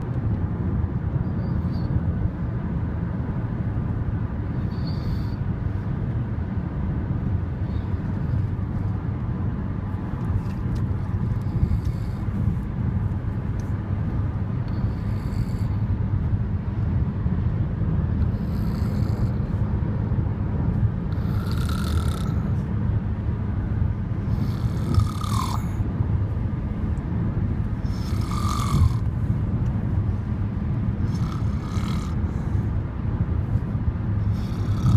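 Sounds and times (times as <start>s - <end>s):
person snoring heavily: 18.4s - 19.5s, 21.2s - 22.5s, 24.3s - 25.8s, 27.8s - 29.1s, 31.0s - 32.6s, 34.3s - 34.9s.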